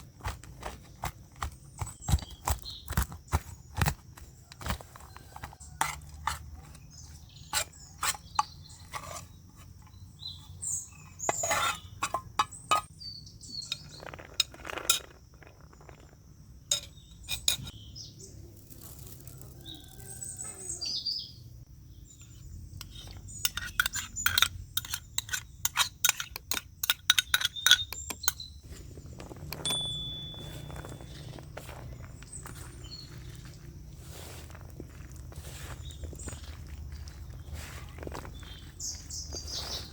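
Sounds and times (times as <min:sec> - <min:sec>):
bird chirps: 0:09.8 - 0:14.2, 0:16.8 - 0:18.6, 0:27.2 - 0:33.7, 0:35.8 - 0:39.9
dishes and utensils clinking: 0:16.7 - 0:17.7, 0:23.4 - 0:28.4, 0:29.2 - 0:31.4.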